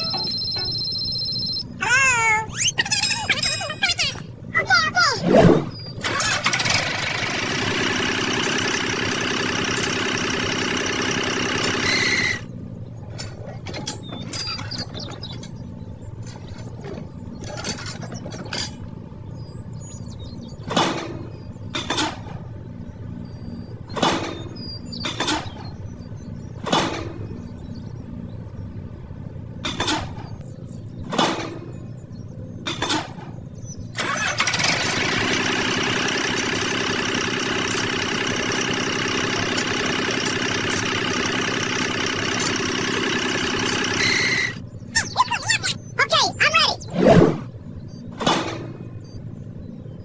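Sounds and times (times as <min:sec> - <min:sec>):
small motor running: 0:06.0 - 0:12.5, 0:34.0 - 0:44.6.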